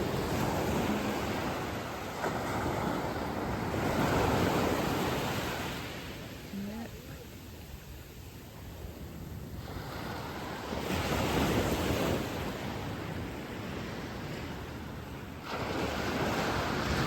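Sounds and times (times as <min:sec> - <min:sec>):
ocean surf breaking: 0:00.0 - 0:17.0.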